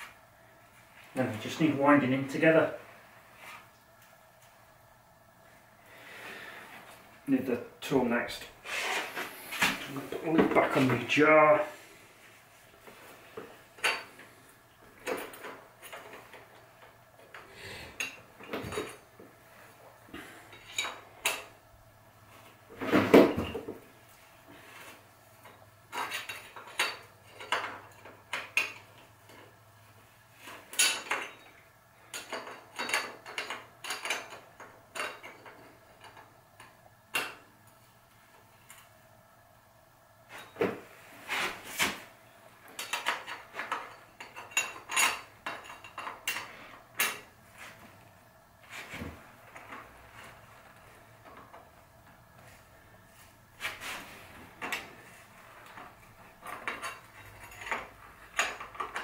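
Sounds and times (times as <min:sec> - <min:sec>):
metal tools clinking and knocking: 0:13.8 - 0:14.2, 0:15.0 - 0:19.1, 0:25.4 - 0:29.5, 0:30.5 - 0:37.4, 0:42.7 - 0:47.3, 0:55.6 - 0:59.0.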